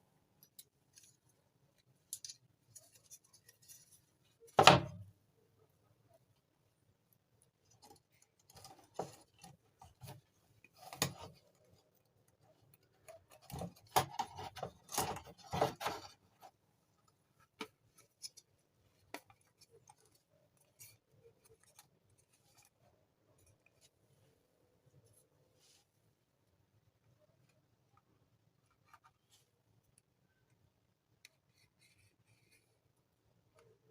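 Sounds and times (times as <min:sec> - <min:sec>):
small parts and tools clicking: 0:00.3 - 0:04.5.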